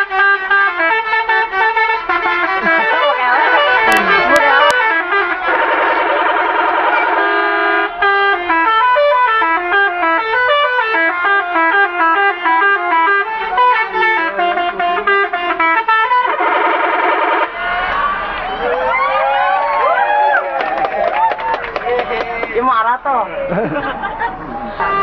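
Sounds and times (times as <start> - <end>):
multi-tone air horns playing: 0.0 - 18.3, 24.8 - 25.0.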